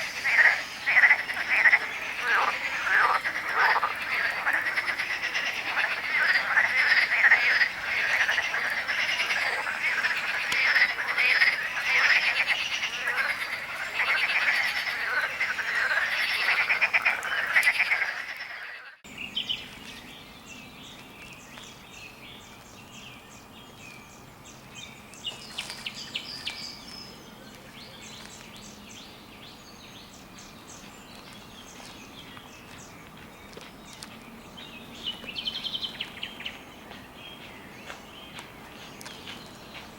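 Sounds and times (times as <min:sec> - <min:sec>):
frogs croaking in chorus: 0:00.0 - 0:19.1.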